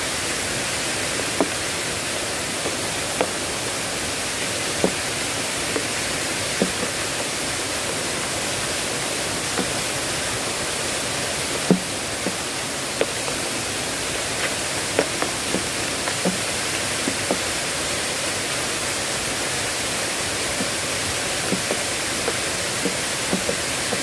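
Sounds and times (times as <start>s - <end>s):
heavy rain hissing: 0.0s - 24.0s
heavy raindrops plopping: 0.0s - 24.0s.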